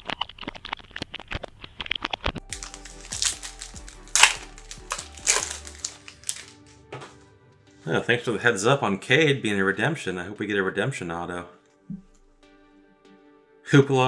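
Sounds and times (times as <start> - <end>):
quick clicks and crackles: 2.5 - 6.7
wrapping tearing and crinkling: 2.5 - 6.7.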